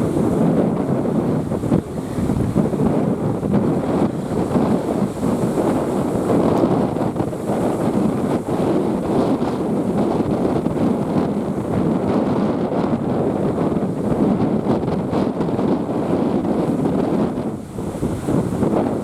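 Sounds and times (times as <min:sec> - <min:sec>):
sea waves: 0:00.0 - 0:19.0
strong wind buffeting microphone: 0:00.0 - 0:19.0.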